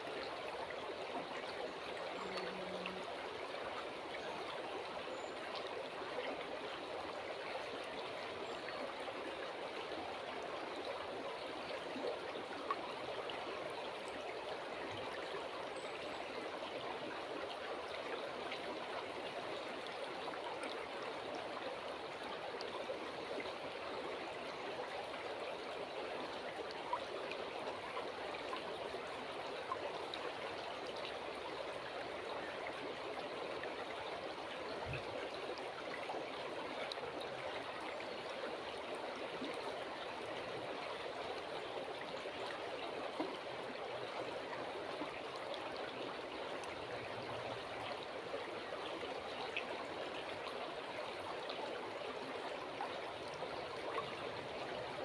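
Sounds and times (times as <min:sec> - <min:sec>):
river water flowing: 0:00.0 - 0:55.0.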